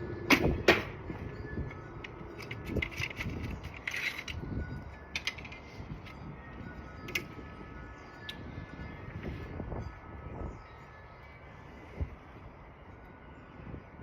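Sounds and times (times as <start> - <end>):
arrows and bow being handled: 1.1 - 7.4.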